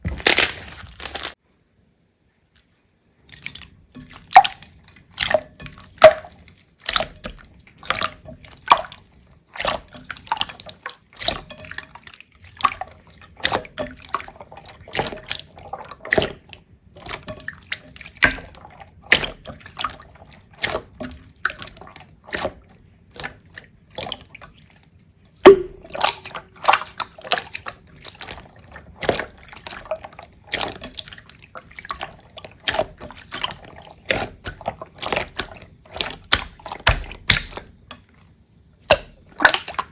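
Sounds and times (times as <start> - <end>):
slime squishing wet pops: 25.4 - 29.9, 30.5 - 38.2, 38.8 - 39.9.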